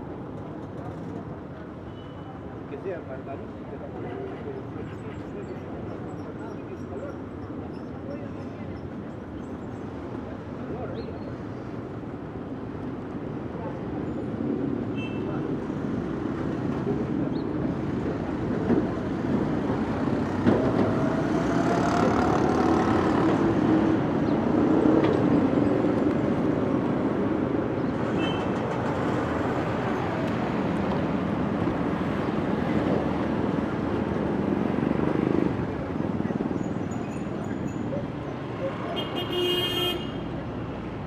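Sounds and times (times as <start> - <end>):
steady traffic noise: 0.0 - 41.0
vehicle passing: 20.6 - 23.6.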